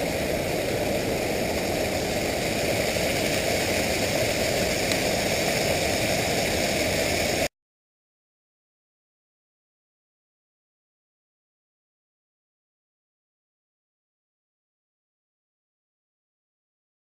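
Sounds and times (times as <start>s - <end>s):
wind noise: 0.0s - 7.5s.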